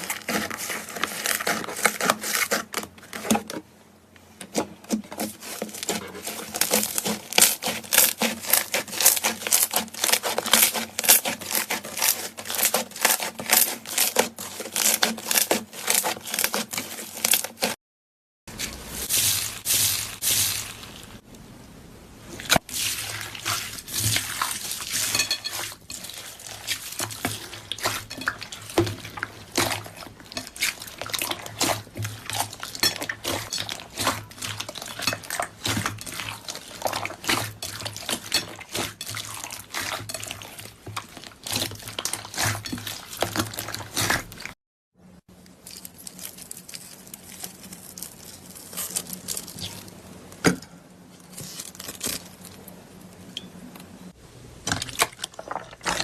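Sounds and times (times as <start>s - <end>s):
slime squelching by hand: 0.0s - 3.5s, 4.5s - 17.8s, 18.5s - 21.2s, 22.3s - 44.6s, 54.8s - 56.0s
low steady hum: 18.5s - 43.1s.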